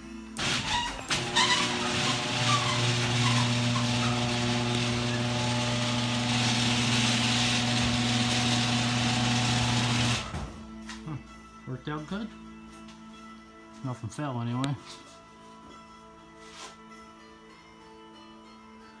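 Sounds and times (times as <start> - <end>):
garage door opener motor hum: 0.4 - 10.7.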